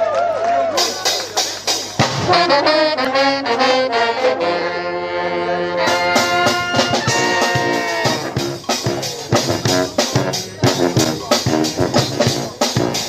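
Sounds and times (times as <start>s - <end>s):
drum hits: 0.8s - 2.6s, 5.9s - 13.0s
brass band playing: 0.8s - 13.0s.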